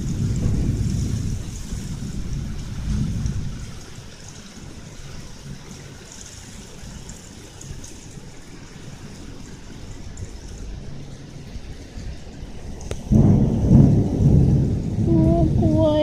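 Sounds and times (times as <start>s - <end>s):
heavy rain falling: 0.0s - 16.0s.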